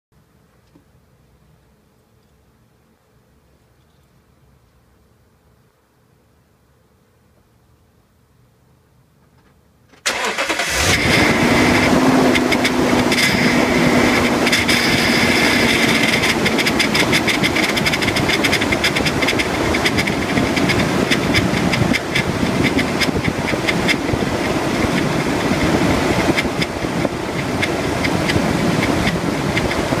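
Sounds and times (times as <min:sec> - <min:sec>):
steady engine whine: 0:10.1 - 0:30.0
rapid clattering ticks: 0:14.2 - 0:30.0.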